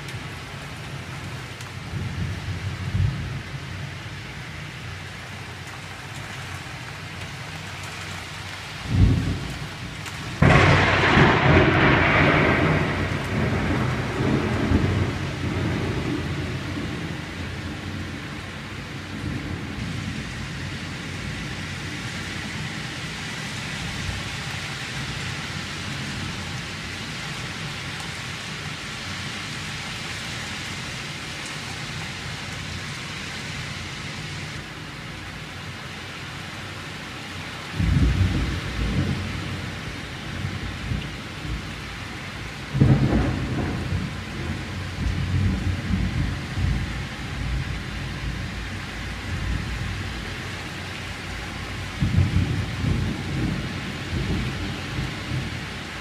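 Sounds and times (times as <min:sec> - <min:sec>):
heavy rain falling: 0:00.0 - 0:56.0
loud rumbling thunderclap: 0:08.8 - 0:18.2, 0:37.8 - 0:41.7, 0:42.7 - 0:48.7, 0:51.9 - 0:55.7.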